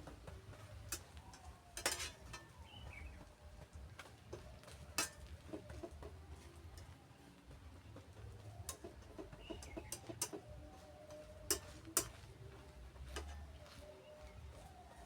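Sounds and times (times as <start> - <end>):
cookware clinking and knocking: 0.9 - 2.6, 4.4 - 5.7.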